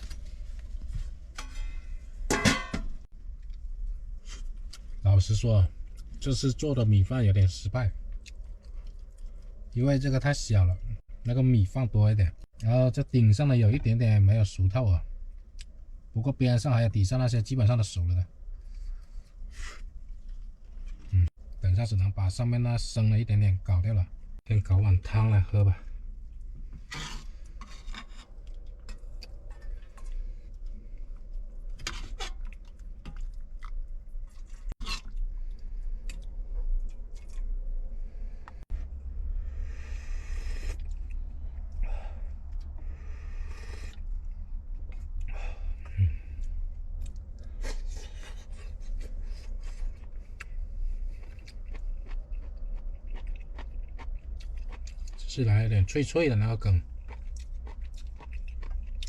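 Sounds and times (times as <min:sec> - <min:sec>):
utensils clinking and scraping pot: 0:01.4 - 0:02.9
steady low rumble: 0:32.4 - 0:59.0
low rumble: 0:35.2 - 0:47.6.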